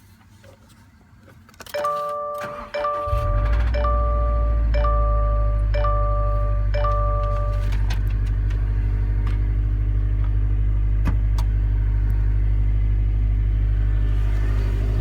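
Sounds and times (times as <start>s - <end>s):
two-tone electronic chime: 1.8s - 7.7s
car engine idling: 1.8s - 15.0s.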